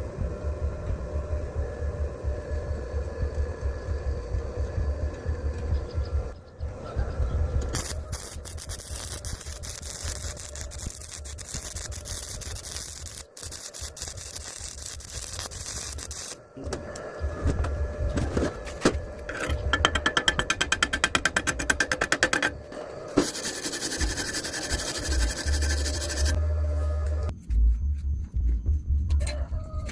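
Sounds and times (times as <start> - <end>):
welding arc crackling hiss: 7.7 - 16.6, 23.1 - 26.4.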